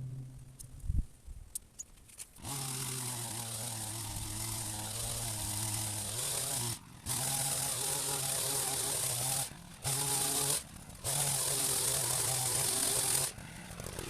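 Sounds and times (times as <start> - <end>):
hedge trimmer running: 2.4 - 14.0.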